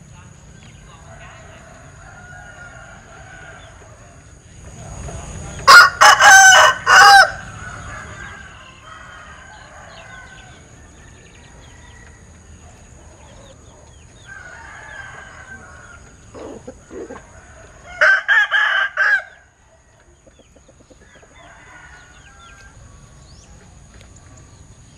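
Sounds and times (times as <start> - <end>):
rooster crowing: 1.0 - 4.3, 5.6 - 12.6, 14.2 - 19.5, 21.0 - 22.8
chickens clucking: 7.3 - 18.2, 19.2 - 24.5.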